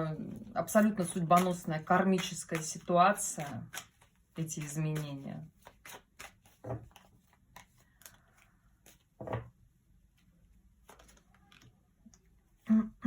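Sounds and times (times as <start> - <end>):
cards being handled on a table: 0.7 - 9.7, 10.7 - 11.8.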